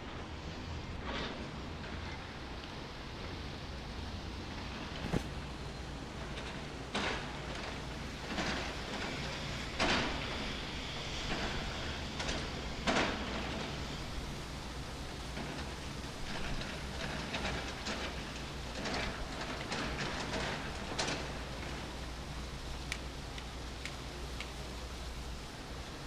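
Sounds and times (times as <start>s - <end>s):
train running past: 0.0s - 26.0s
light ticks: 22.8s - 24.6s.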